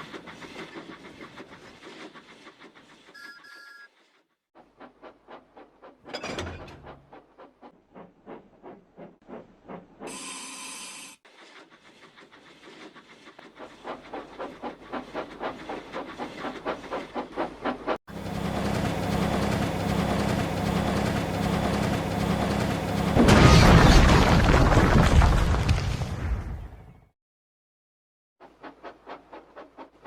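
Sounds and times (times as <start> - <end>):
steam locomotive chuffing: 4.6 - 23.3, 28.4 - 30.0
steam whistle blast: 10.1 - 11.2
steady mechanical hum: 18.1 - 23.6.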